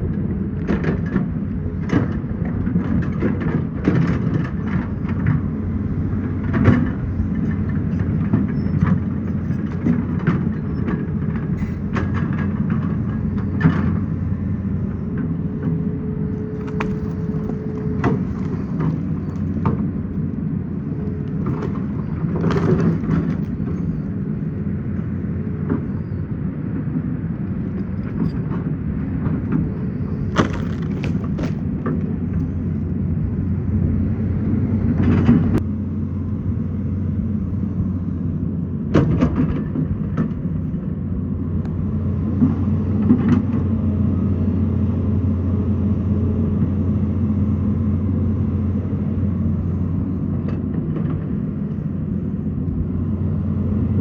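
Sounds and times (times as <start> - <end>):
excavator diesel engine running: 0.0 - 54.0
rock and bucket clatter: 30.3 - 31.7.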